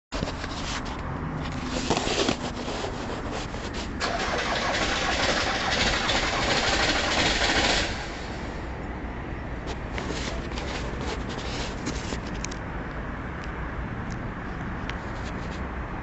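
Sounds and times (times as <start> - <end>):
starter motor cranking diesel engine: 4.0 - 8.6.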